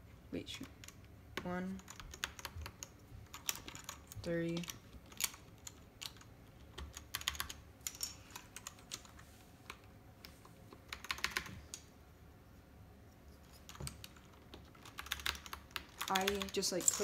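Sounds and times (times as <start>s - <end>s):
mechanical keyboard keys clicking: 0.6s - 9.1s, 10.8s - 11.8s, 13.7s - 17.0s.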